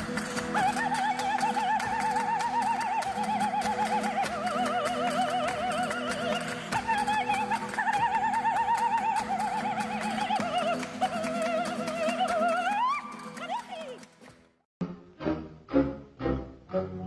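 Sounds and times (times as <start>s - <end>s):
soprano singing with vibrato: 0.4s - 14.0s
steady musical accompaniment: 14.0s - 17.0s.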